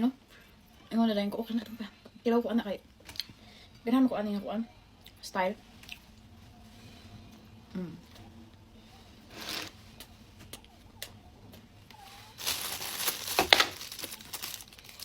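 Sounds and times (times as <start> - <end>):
plastic packaging crinkling: 12.0 - 15.0.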